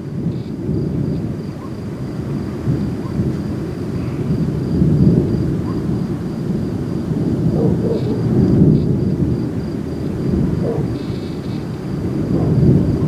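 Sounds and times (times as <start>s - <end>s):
volcano rumbling: 3.5s - 13.0s.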